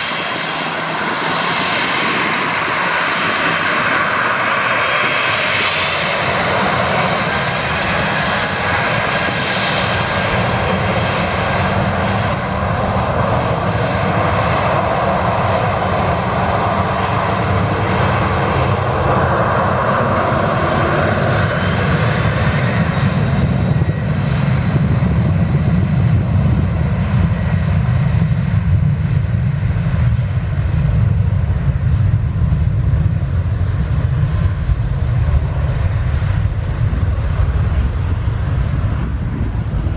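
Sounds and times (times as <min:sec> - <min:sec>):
jet engine roar: 0:00.0 - 0:39.9.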